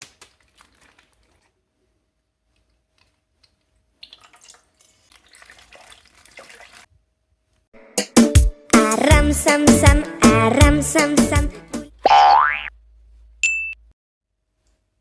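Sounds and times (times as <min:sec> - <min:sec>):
water dripping: 0:00.0 - 0:01.5, 0:03.0 - 0:06.9
water splashing and trickling: 0:00.0 - 0:01.6, 0:03.9 - 0:06.9.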